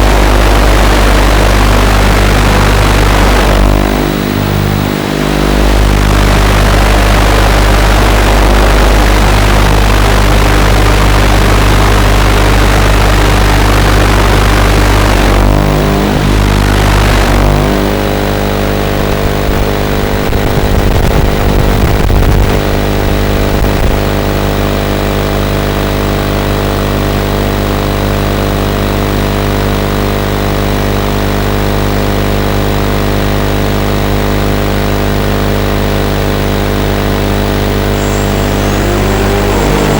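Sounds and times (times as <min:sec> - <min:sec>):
quadcopter motors droning: 0:00.0 - 0:24.4, 0:37.0 - 0:39.9
loud rushing noise: 0:37.3 - 0:39.9.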